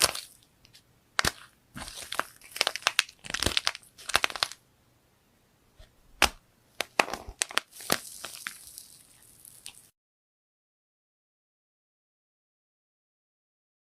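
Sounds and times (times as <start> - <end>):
brittle crackling and crunching: 0.0 - 0.4, 1.2 - 4.6, 6.8 - 9.9.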